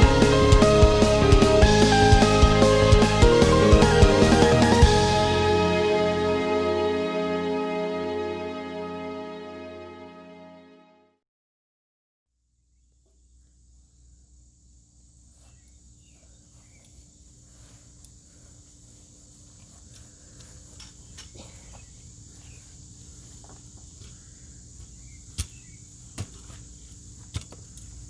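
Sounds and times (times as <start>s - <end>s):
steady low hum: 12.6s - 28.0s
light clicks and rustles: 19.7s - 22.6s.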